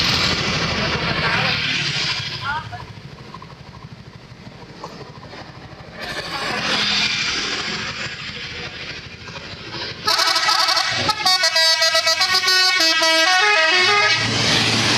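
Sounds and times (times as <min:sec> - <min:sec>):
bus engine and road noise: 0:00.0 - 0:14.9
musical bus horn tune: 0:10.1 - 0:14.3.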